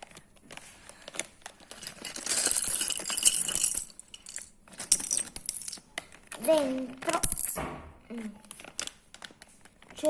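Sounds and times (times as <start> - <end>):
plastic bag crinkling: 0.0 - 6.6, 8.4 - 10.0
plastic pieces rattling in bag: 1.0 - 7.6.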